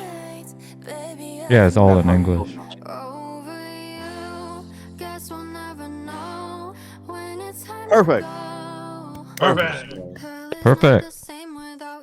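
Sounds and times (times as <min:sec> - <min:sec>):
pop song with women singing: 0:00.0 - 0:12.0
steady bass line: 0:09.4 - 0:10.3.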